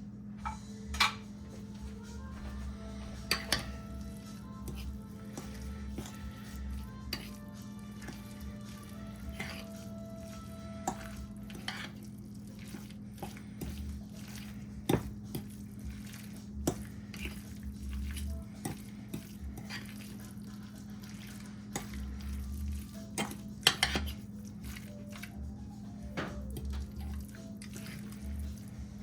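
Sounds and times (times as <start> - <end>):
steady low hum: 0.0 - 29.0
utensil clinking against a dish: 3.0 - 25.4.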